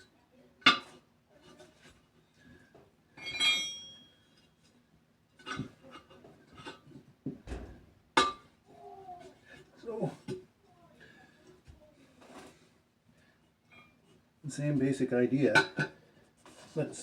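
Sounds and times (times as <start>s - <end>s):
tire bars clinking on wheel rim: 3.2s - 4.4s
light knocks and scrapes: 11.6s - 12.7s, 16.3s - 16.9s.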